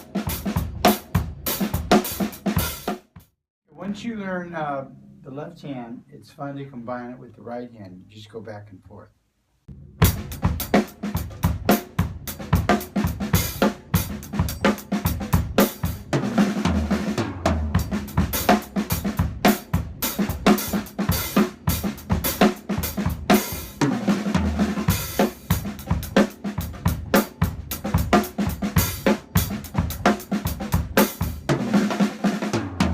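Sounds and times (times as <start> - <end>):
drum kit playing single strokes: 9.7 - 32.9.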